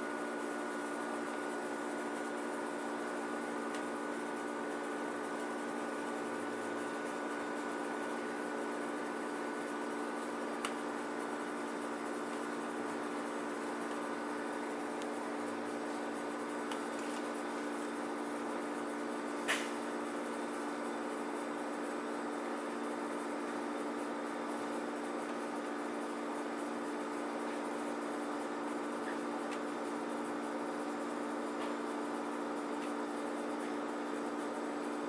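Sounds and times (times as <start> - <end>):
air conditioner humming: 0.0 - 35.0.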